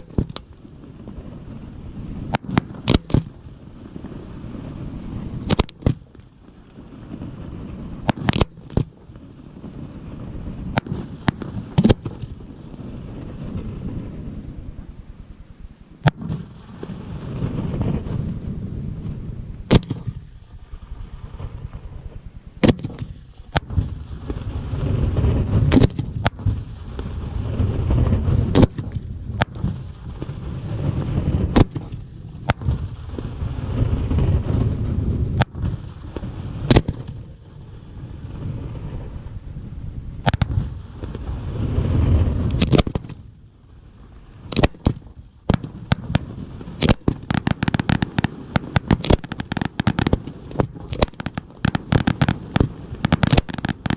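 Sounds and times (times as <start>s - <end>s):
crackling firework bangs: 0.0s - 53.9s
rumble of booms and echoes: 0.0s - 53.9s
firework shell bursts: 2.0s - 3.6s, 5.1s - 6.3s, 8.0s - 9.1s, 19.7s - 20.6s, 25.5s - 27.1s, 40.2s - 41.3s, 42.4s - 43.3s, 44.4s - 53.9s.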